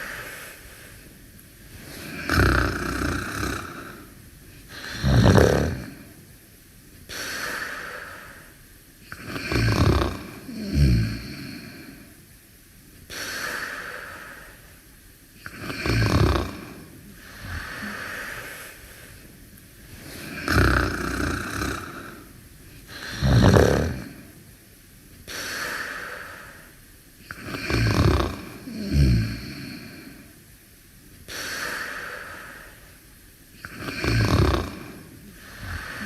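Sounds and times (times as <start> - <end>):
breathy breaths: 0.0 - 6.2, 7.1 - 12.3, 13.1 - 24.6, 25.2 - 30.5, 31.2 - 36.0
loud snoring: 1.8 - 4.1, 4.7 - 6.2, 9.1 - 11.9, 15.4 - 18.5, 20.0 - 22.3, 22.9 - 24.3, 27.3 - 30.2, 33.6 - 36.0.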